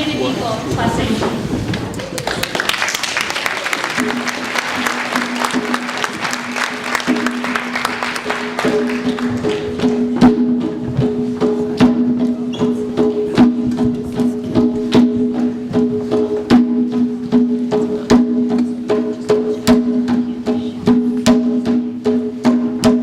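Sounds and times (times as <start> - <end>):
applause: 1.9 - 10.0
percussion slow steady beat: 2.8 - 23.0.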